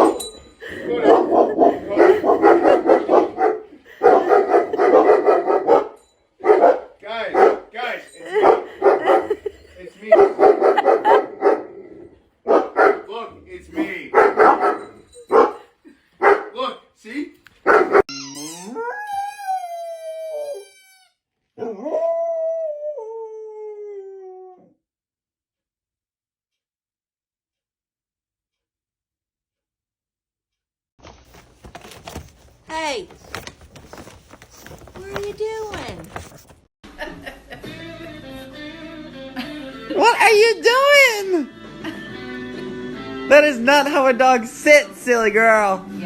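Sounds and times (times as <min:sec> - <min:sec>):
dog barking: 0:00.0 - 0:00.2, 0:00.8 - 0:09.4, 0:10.1 - 0:13.2, 0:13.8 - 0:16.6, 0:17.6 - 0:18.1
dog howling: 0:17.7 - 0:20.8.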